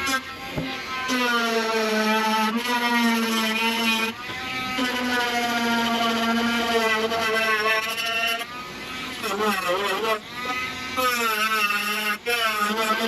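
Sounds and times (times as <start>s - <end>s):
power grinder whining on metal: 0.0s - 13.0s.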